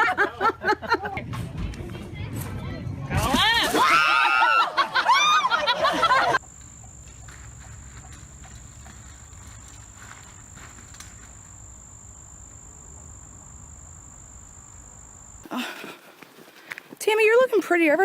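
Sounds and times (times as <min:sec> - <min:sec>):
high-pitched insect trill: 0:06.4 - 0:15.6.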